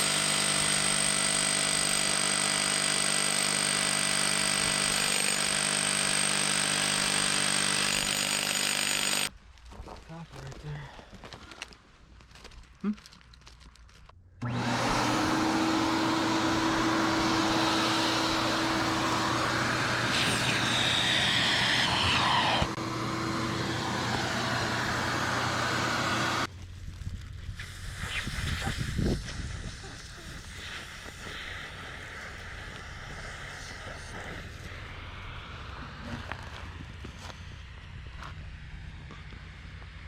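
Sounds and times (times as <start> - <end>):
motorized machine humming: 14.4 - 26.5.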